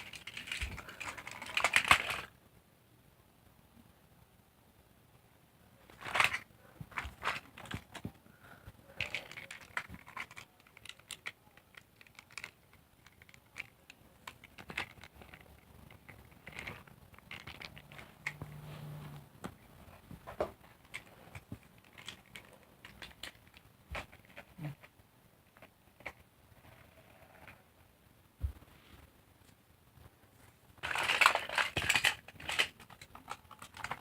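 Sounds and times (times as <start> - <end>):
plastic toys clicking and scraping: 0.0 - 2.3, 5.8 - 8.2, 8.8 - 18.6, 20.4 - 27.6, 30.8 - 34.0.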